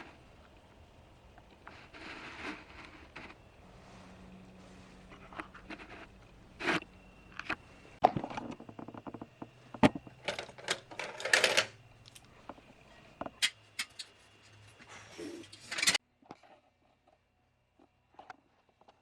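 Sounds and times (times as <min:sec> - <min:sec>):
tool scraping: 0:00.0 - 0:16.0
tools clicking and knocking: 0:06.6 - 0:16.0.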